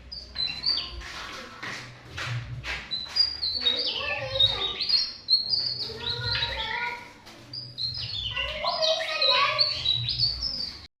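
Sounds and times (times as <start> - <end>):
bird singing whistled notes: 0.0 - 1.0, 2.9 - 6.9, 7.5 - 10.9.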